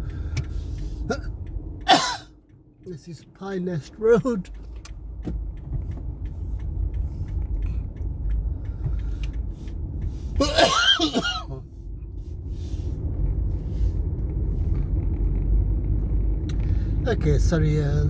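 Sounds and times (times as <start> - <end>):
car driving rumble inside cabin: 0.0 - 18.0
person coughing: 1.9 - 2.3, 10.4 - 11.6.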